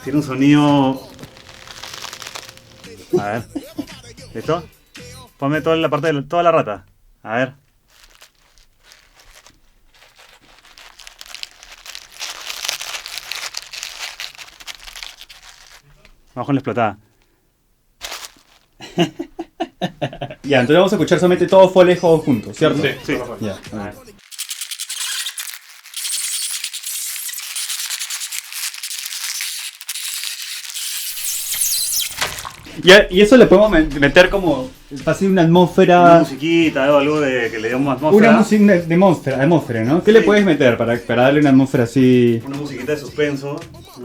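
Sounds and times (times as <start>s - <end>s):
cabbage crunching: 0.0s - 3.8s, 7.8s - 16.0s, 18.0s - 18.8s, 24.2s - 35.2s.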